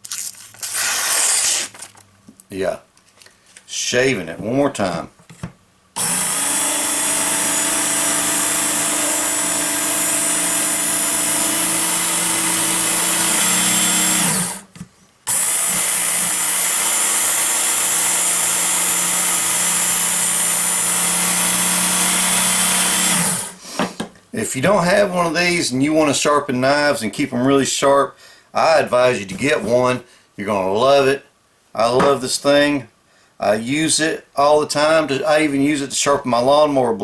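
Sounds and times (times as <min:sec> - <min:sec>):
electric knife sharpener motor: 0:06.0 - 0:14.7, 0:15.3 - 0:23.6.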